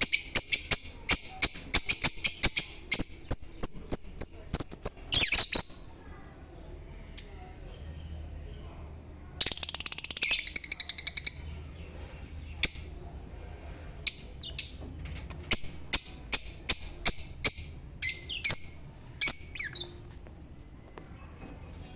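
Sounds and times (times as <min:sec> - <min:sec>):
lovebirds chirping: 0:00.0 - 0:05.9, 0:14.1 - 0:14.9, 0:15.5 - 0:20.0.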